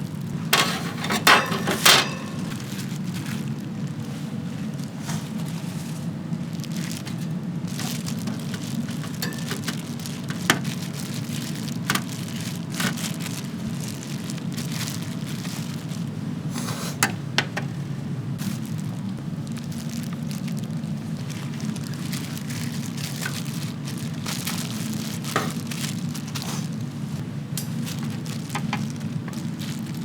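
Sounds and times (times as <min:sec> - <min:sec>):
chicken sizzling over charcoal: 0:00.0 - 0:17.0
steady low hum: 0:00.0 - 0:30.0.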